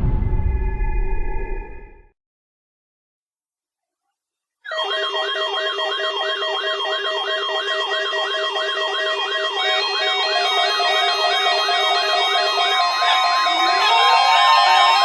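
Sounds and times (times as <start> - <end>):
electronic siren-like wail: 4.7 - 15.0.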